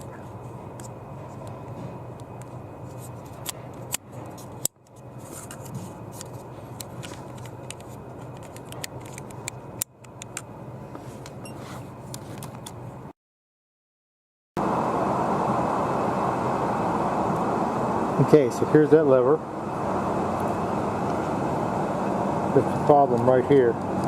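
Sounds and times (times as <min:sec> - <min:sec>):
steady background hum: 0:00.0 - 0:13.1, 0:14.6 - 0:24.0.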